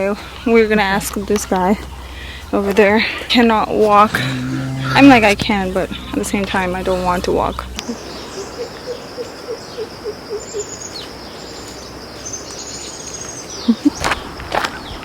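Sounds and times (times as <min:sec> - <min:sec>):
high insect buzz: 0:00.2 - 0:09.1
bird hooting: 0:04.0 - 0:10.8.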